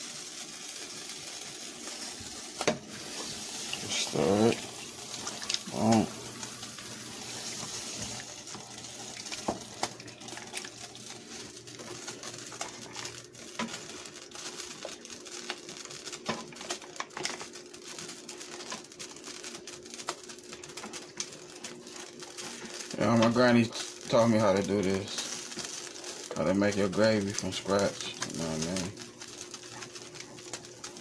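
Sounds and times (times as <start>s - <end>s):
steady hiss: 0.0s - 14.6s, 22.0s - 31.0s.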